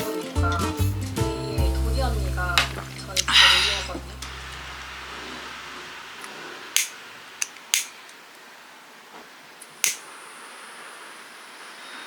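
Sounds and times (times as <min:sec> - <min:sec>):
faint steady hiss: 0:00.0 - 0:12.0
sharp clicks: 0:06.8 - 0:08.2, 0:09.7 - 0:10.1.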